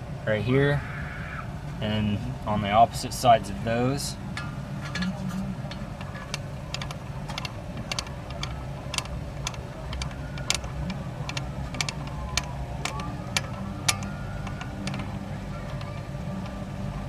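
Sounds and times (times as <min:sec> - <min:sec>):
steady low hum: 0:00.0 - 0:17.0
hand ratchet clicking: 0:05.7 - 0:16.6.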